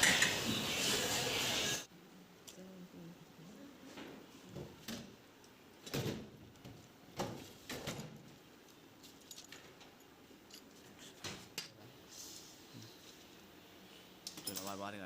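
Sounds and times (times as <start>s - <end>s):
metal tools clinking: 14.3s - 14.8s.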